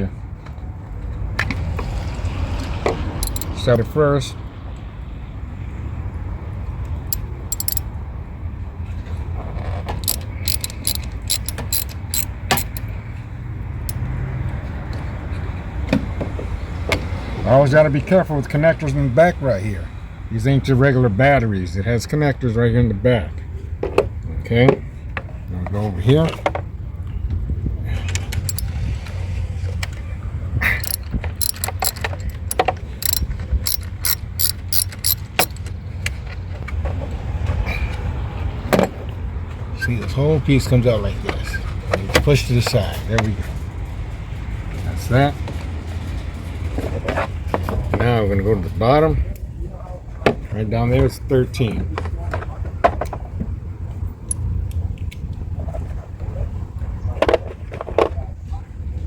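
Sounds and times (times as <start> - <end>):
ratchet wrench clicking: 3.2 - 3.7, 7.1 - 7.8, 10.0 - 12.9, 28.5 - 28.7, 30.8 - 35.6.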